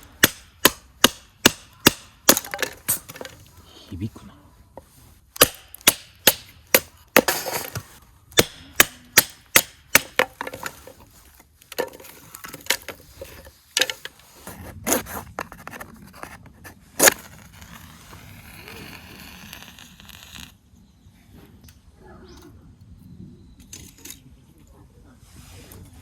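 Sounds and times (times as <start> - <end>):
firewood splitting and cracking: 0.0 - 3.6, 5.3 - 20.6
soft rustle: 3.0 - 5.3, 10.5 - 20.5, 25.1 - 26.0.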